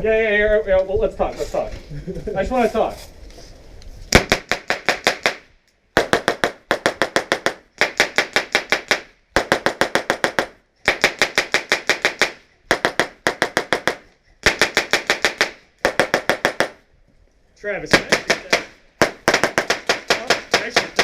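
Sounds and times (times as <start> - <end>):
airsoft gun rapid bursts: 6.0 - 16.8, 17.9 - 21.0.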